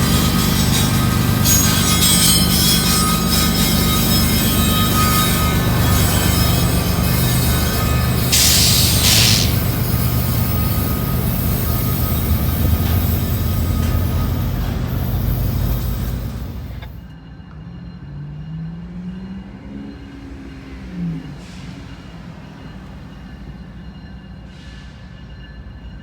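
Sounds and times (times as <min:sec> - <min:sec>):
diesel locomotive engine drone: 0:00.0 - 0:26.0
rail noise: 0:00.0 - 0:26.0
burst of hiss: 0:08.3 - 0:09.9.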